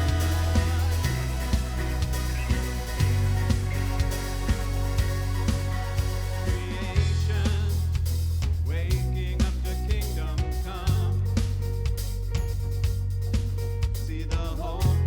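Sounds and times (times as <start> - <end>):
person singing: 0.0 - 3.4, 6.4 - 7.9
bass and sustained chords: 0.0 - 15.0
drum kit beat: 0.0 - 15.0.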